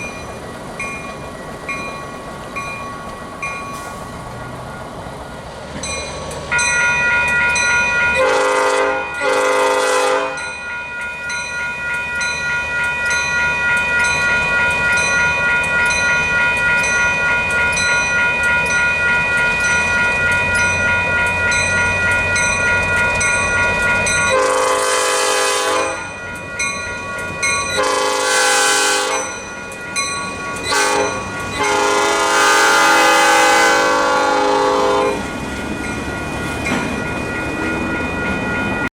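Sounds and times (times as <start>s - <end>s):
bell ringing: 0.0s - 4.0s, 5.8s - 9.5s, 10.3s - 24.8s, 25.9s - 28.3s, 29.0s - 32.1s, 34.7s - 38.9s
low rumble of locomotive: 0.0s - 38.9s
locomotive horn blasts: 8.2s - 10.5s, 24.3s - 26.1s, 27.8s - 29.4s, 30.7s - 35.3s.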